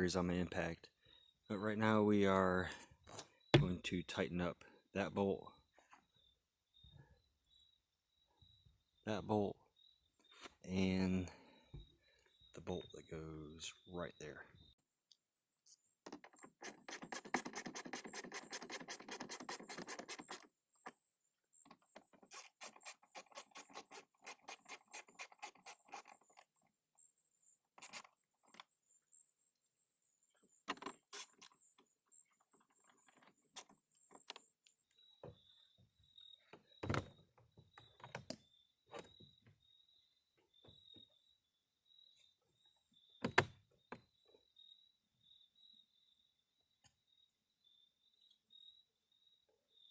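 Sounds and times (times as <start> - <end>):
knocks: 3.5 - 3.8.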